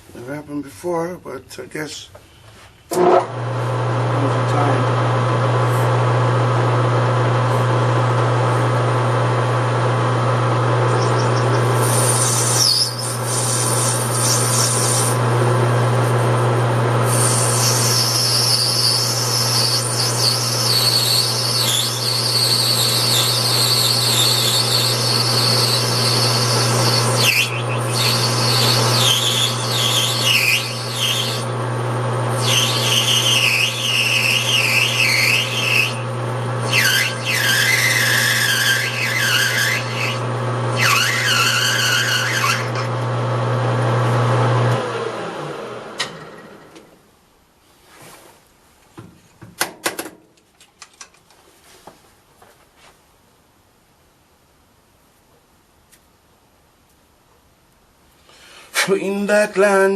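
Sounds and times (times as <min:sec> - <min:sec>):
metal lathe motor hum: 0:02.9 - 0:46.2
cutting tool squealing: 0:10.7 - 0:15.2, 0:17.1 - 0:31.5, 0:32.3 - 0:42.9.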